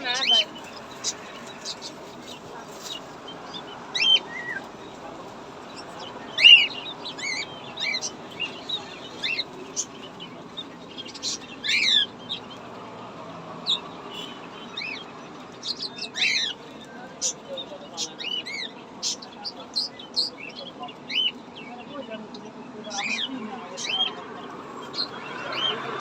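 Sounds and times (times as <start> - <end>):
background hubbub: 0.0 - 26.0
small birds chirping: 0.0 - 26.0.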